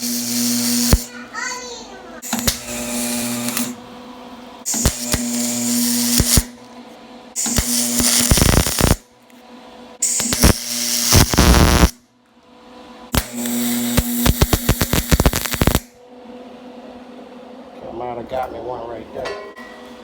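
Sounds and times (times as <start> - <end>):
welding arc crackling and hissing: 0.0 - 1.2, 2.2 - 3.8, 4.7 - 6.6, 7.4 - 9.0, 10.0 - 12.0, 13.1 - 15.9
welder hum: 0.0 - 9.1, 10.0 - 12.0, 13.1 - 16.0.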